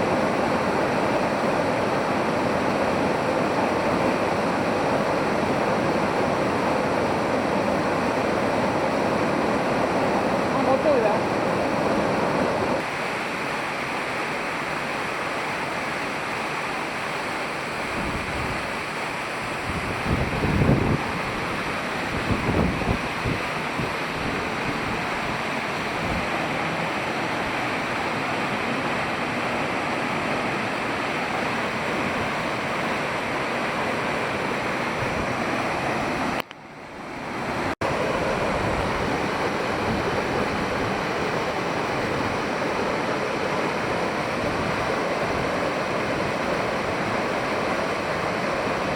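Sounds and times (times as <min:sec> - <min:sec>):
waterfall rushing: 0:00.0 - 0:48.9
wind gusts on microphone: 0:15.4 - 0:48.9.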